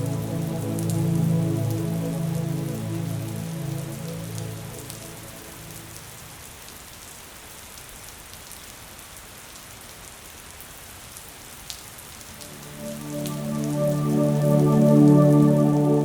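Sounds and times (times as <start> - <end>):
steady rain hiss: 0.0 - 16.0
raindrops ticking: 12.2 - 15.9.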